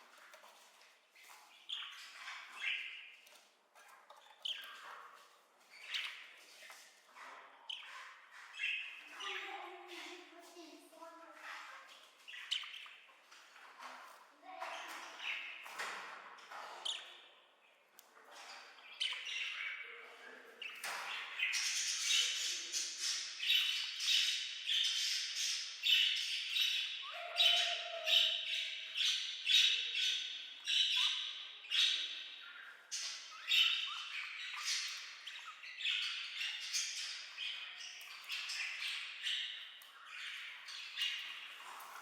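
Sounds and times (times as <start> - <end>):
budgerigars chattering and squawking: 18.4 - 41.8.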